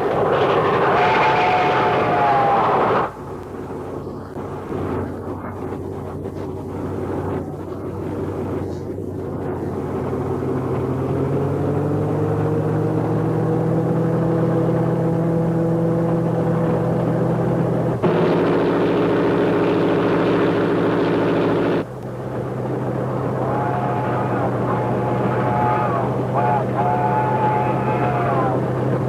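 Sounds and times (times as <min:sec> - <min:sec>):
steady low hum: 0:13.8 - 0:29.0
steam locomotive whistle: 0:23.4 - 0:28.7.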